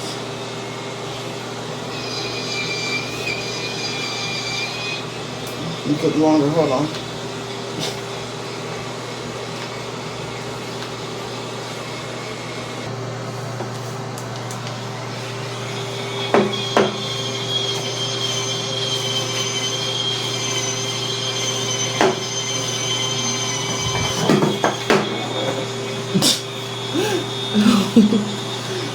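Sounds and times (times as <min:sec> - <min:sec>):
electric spin scrubber running: 0:00.0 - 0:28.9
high whine: 0:01.8 - 0:07.7, 0:15.2 - 0:26.0.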